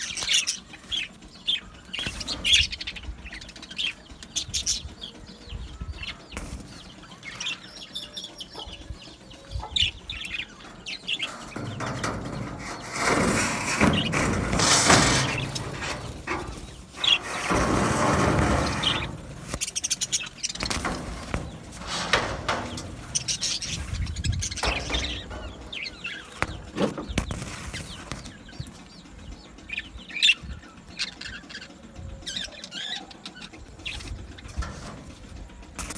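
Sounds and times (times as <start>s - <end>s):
budgerigars chirping and chattering: 0.0s - 35.9s
loud rustling: 9.7s - 29.6s.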